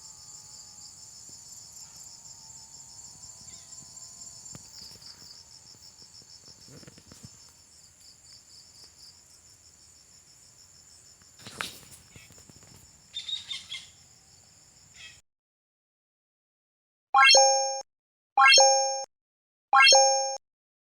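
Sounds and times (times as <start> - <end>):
crickets chirring: 0.0 - 15.2
bird chirps: 11.4 - 14.1.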